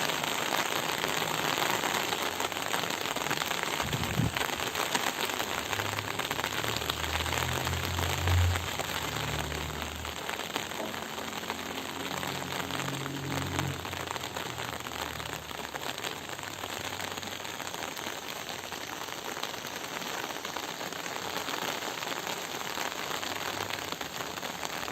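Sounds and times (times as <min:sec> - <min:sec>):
steady rain falling: 0:00.0 - 0:24.9
low rumble: 0:03.7 - 0:11.1.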